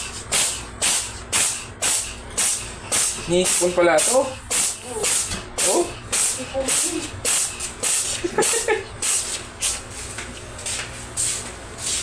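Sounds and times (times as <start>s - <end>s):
cat sneezing: 0.3s - 3.6s, 4.5s - 9.4s.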